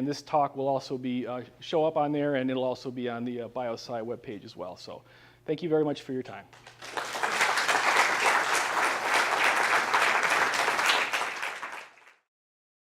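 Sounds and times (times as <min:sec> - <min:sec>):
audience applauding: 0:06.6 - 0:12.2.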